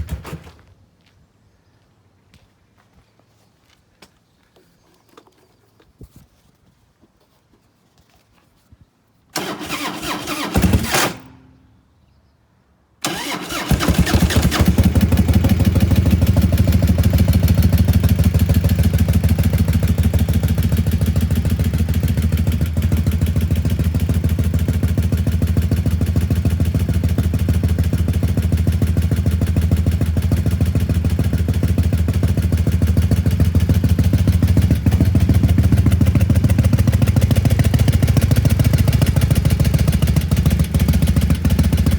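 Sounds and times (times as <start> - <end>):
motorcycle engine cranking: 9.4 - 11.5, 13.0 - 26.7, 32.4 - 41.9
motorcycle engine idling: 13.1 - 41.9.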